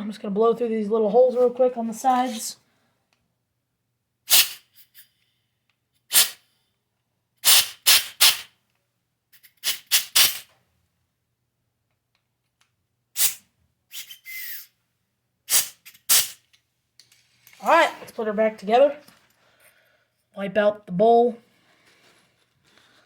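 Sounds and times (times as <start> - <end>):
compressed air hissing: 4.3 - 5.1, 6.1 - 6.4, 7.4 - 8.5, 9.5 - 10.5, 13.2 - 14.7, 15.5 - 16.4.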